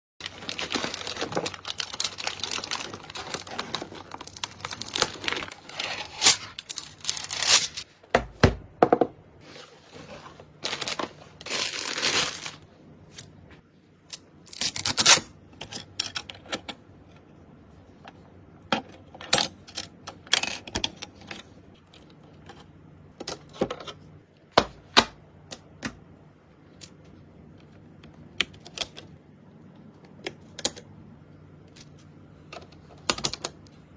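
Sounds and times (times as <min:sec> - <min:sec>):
packaging rustling and tearing: 0:00.2 - 0:07.9, 0:09.4 - 0:12.7.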